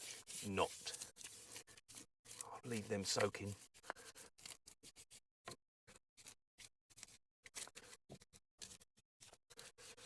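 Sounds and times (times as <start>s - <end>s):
brush scrubbing car wheel: 0.0s - 1.4s.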